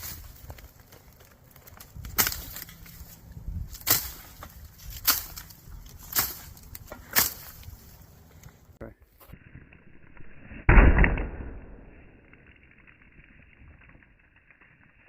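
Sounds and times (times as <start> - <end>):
machete chopping: 2.1 - 2.6, 3.7 - 7.7.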